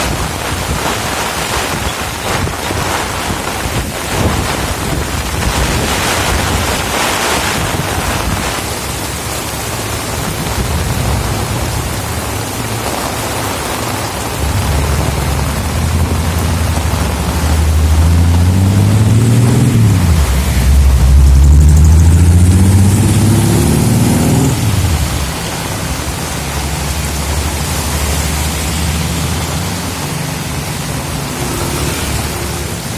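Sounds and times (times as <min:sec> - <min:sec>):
heavy rain pouring: 0:00.0 - 0:32.9
strong gusting wind: 0:00.0 - 0:32.9
vehicle engine approaching: 0:14.2 - 0:32.9.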